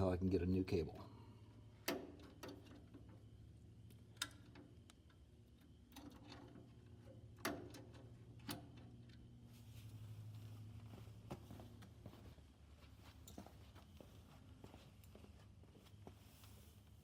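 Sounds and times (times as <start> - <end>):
faint low hum: 0.0 - 17.0
small metal clicks and taps: 3.9 - 5.2.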